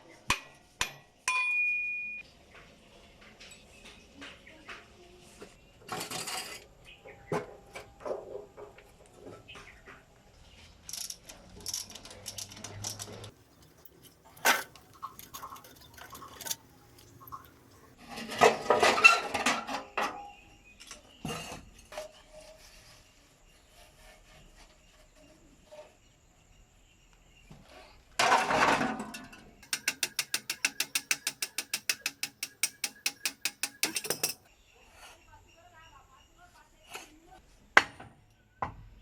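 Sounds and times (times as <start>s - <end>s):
metal parts clattering: 11.7s - 18.0s, 29.1s - 34.4s
metal tools clinking and knocking: 11.8s - 18.0s, 28.8s - 34.5s.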